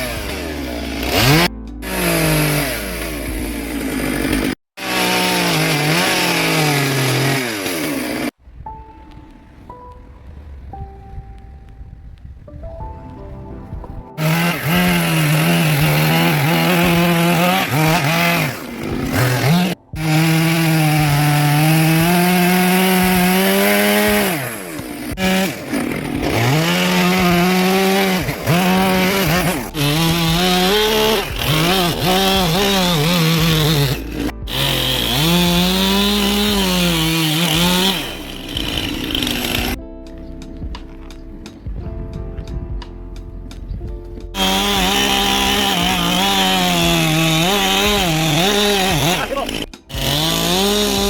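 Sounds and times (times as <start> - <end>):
chainsaw carving wood: 0.0 - 8.4, 14.2 - 39.8, 44.3 - 51.0.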